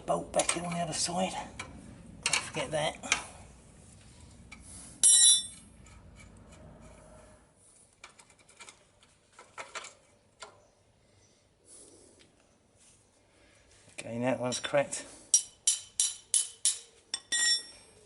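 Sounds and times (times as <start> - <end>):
metal tools clinking: 5.0 - 6.1, 15.3 - 17.9.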